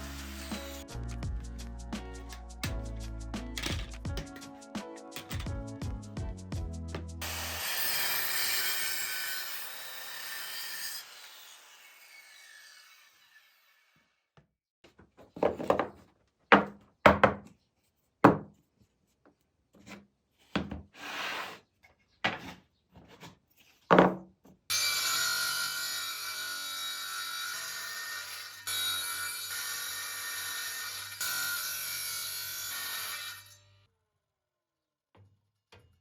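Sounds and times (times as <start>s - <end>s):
hand tool rasping wood: 0.0s - 1.0s.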